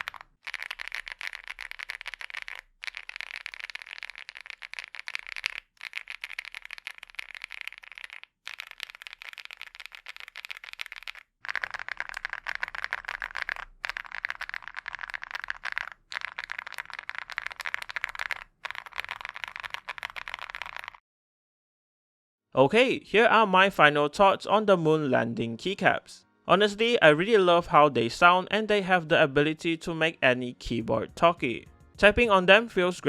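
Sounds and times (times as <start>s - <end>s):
mechanical keyboard typing: 0.0s - 21.0s.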